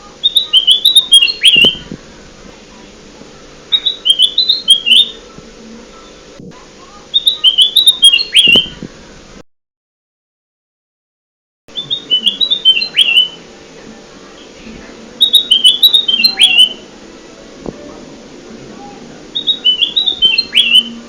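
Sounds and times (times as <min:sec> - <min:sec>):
chirpy whistled bird song: 0:00.1 - 0:02.0, 0:03.7 - 0:08.9, 0:11.7 - 0:13.5, 0:14.4 - 0:16.9, 0:19.3 - 0:21.0.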